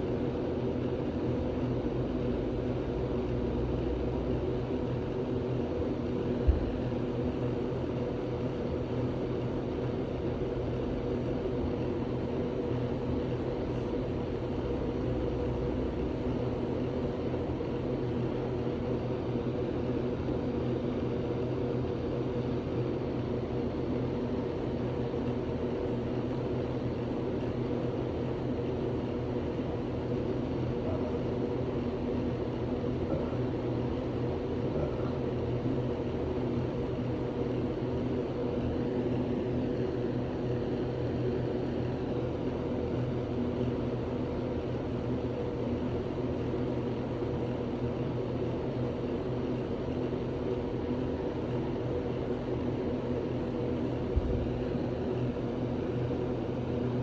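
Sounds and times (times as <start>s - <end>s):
steady mechanical drone: 0.0s - 57.0s.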